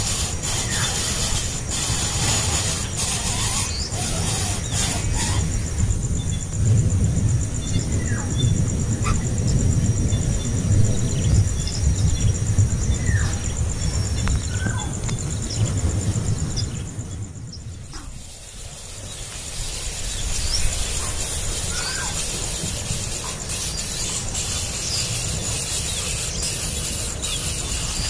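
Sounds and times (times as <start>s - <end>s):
steady low rumble: 0.0s - 18.0s
high hiss: 0.0s - 28.0s
bird chirps: 16.6s - 28.0s.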